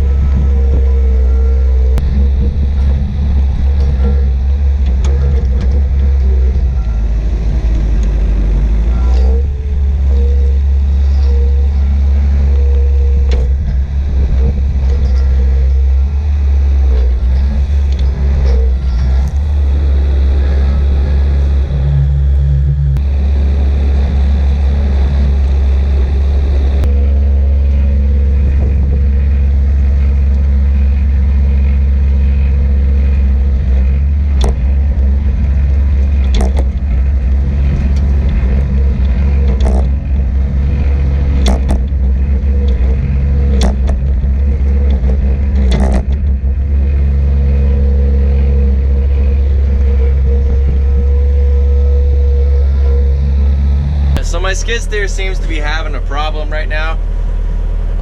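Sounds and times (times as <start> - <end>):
farm machine engine drone: 0.0 - 58.0
sharp clicks or knocks: 41.3 - 42.9.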